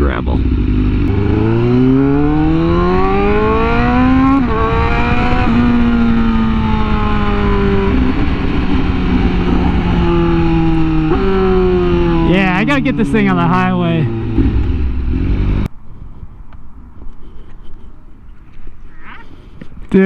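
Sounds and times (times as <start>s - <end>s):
motorcycle engine accelerating: 0.0s - 15.7s.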